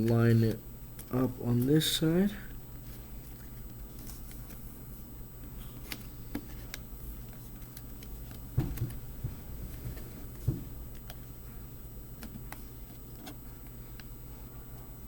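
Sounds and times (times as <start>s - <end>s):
knocks on laptop chassis: 8.5s - 10.8s.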